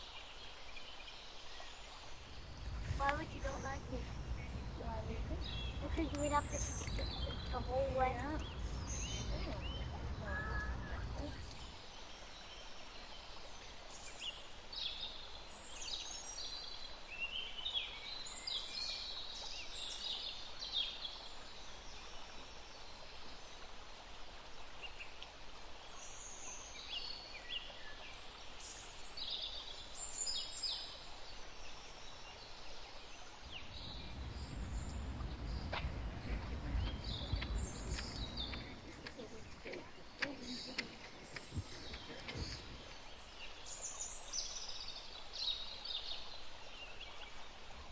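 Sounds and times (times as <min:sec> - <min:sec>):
birds chirping: 0:02.1 - 0:11.8, 0:33.4 - 0:44.6
low rumble: 0:33.5 - 0:40.0.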